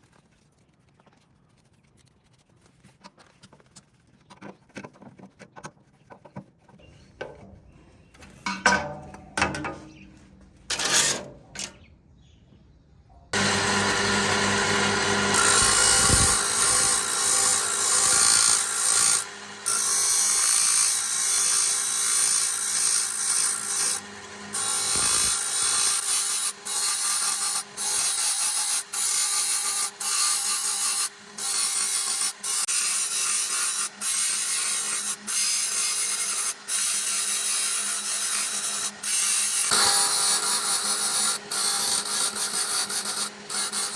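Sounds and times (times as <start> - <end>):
electric power tool running: 13.4 - 43.9.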